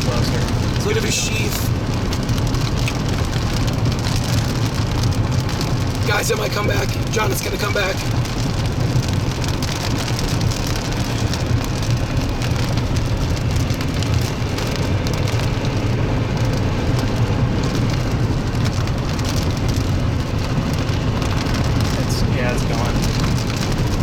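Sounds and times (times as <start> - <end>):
low rain rumble: 0.0 - 24.0
rain drops ticking: 0.0 - 24.0.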